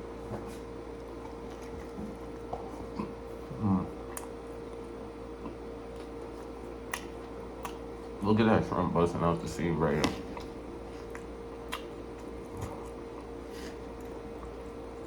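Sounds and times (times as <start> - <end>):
chewing sandwich mouth sounds: 0.0 - 8.6, 9.2 - 15.0
faint steady hum: 0.0 - 15.0
person murmuring: 3.5 - 4.0.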